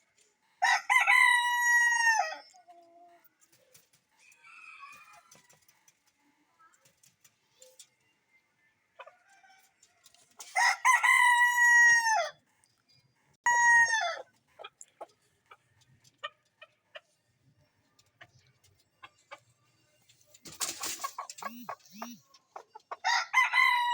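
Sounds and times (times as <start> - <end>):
rooster crowing: 0.6 - 2.4, 10.6 - 12.3, 13.5 - 14.2, 23.0 - 23.9
chicken clucking softly: 14.1 - 23.2.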